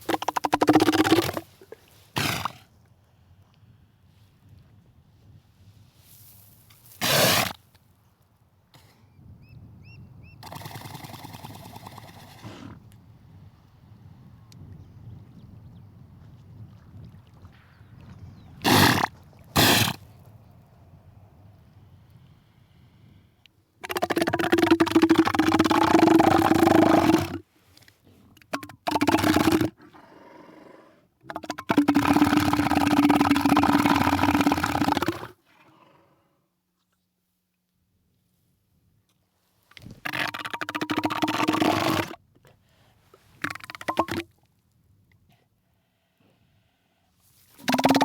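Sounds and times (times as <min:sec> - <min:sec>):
elephant seal calling: 0:00.0 - 0:02.5.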